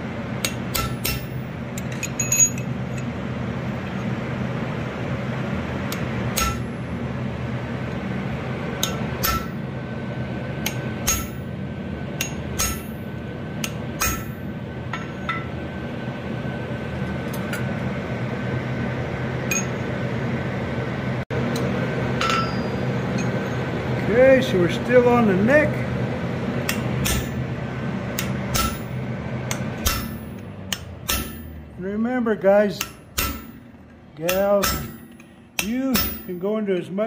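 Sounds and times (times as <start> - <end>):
steady low hum: 0.0 - 37.0
hammer striking metal on anvil: 0.4 - 3.1, 5.9 - 6.8, 8.8 - 9.7, 10.6 - 11.6, 12.2 - 15.6, 19.5 - 19.9, 22.2 - 23.6, 26.7 - 27.5, 28.2 - 31.7, 32.7 - 36.6.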